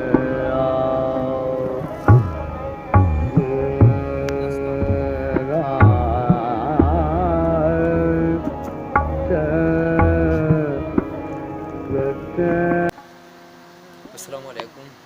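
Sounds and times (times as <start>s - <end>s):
wavering sustained melody: 0.0s - 14.9s
tabla drum strokes: 1.6s - 11.2s.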